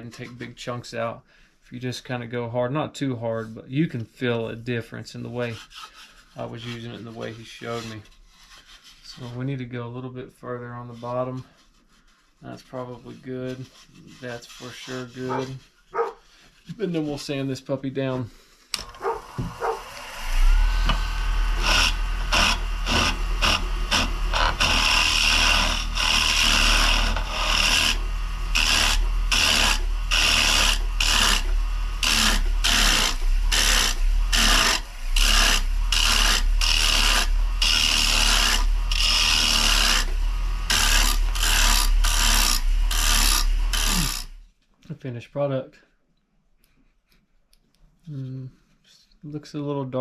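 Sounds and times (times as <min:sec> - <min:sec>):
sandpaper rasping on wood: 0:12.7 - 0:16.2, 0:19.0 - 0:19.9, 0:21.6 - 0:44.4
wood lathe humming: 0:18.8 - 0:44.4.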